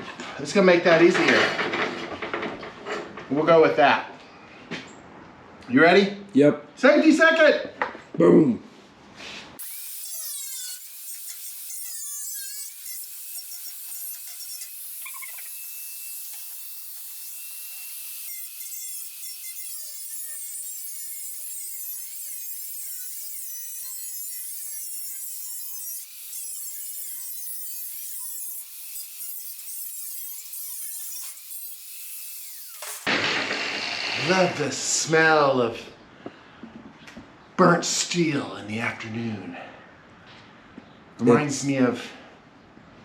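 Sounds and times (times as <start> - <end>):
power tool cutting metal: 9.6 - 34.8.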